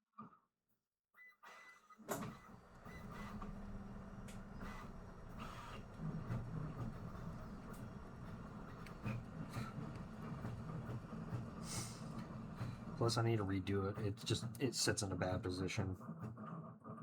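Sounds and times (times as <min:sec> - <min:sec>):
extractor fan humming: 0:02.5 - 0:13.2.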